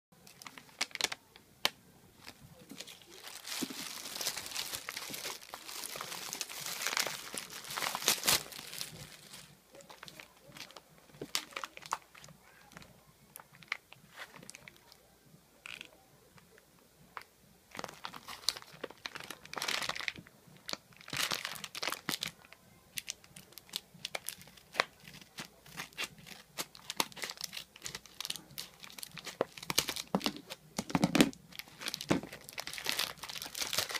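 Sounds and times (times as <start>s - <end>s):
packaging tearing and crinkling: 0.3s - 1.2s, 2.6s - 12.3s, 17.8s - 33.9s.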